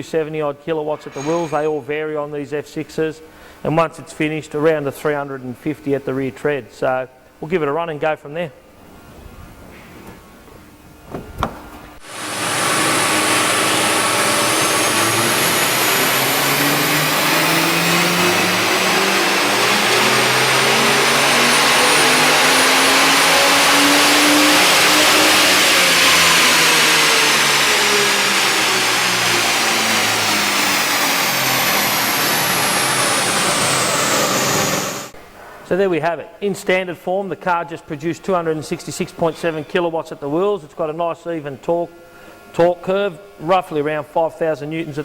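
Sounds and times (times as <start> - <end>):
car engine revving at full throttle: 12.0 - 35.1.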